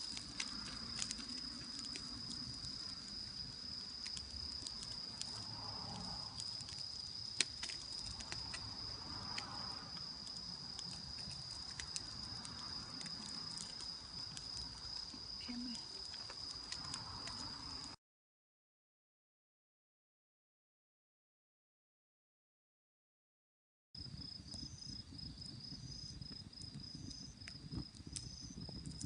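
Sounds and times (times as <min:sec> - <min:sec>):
campfire crackling: 0:00.0 - 0:18.0, 0:24.0 - 0:29.0
insects trilling: 0:00.0 - 0:18.0, 0:24.0 - 0:29.0.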